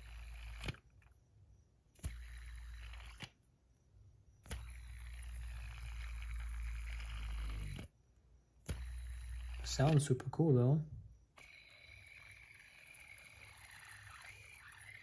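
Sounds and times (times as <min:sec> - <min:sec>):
fidget spinner click: 0:00.0 - 0:01.2, 0:02.0 - 0:03.4, 0:04.4 - 0:07.9, 0:08.6 - 0:10.1, 0:11.4 - 0:15.0
fidget spinner bearing whir: 0:00.0 - 0:03.5, 0:04.4 - 0:10.4, 0:11.1 - 0:15.0.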